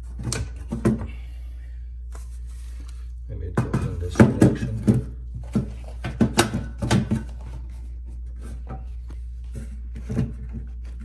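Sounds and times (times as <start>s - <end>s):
vent cover knocks and clatter: 0.0s - 1.2s, 3.4s - 11.0s
steady low hum: 0.0s - 11.0s.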